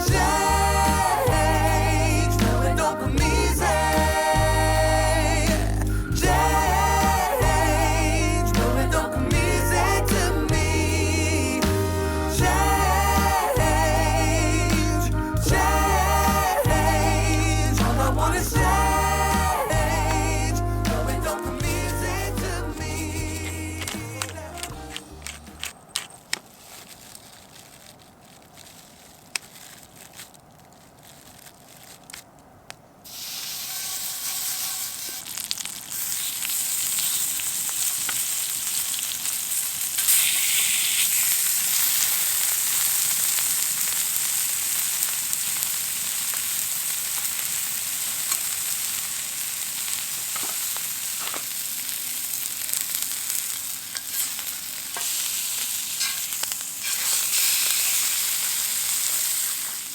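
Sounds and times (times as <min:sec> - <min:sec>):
food sizzling in a hot pan: 0:33.1 - 0:59.9.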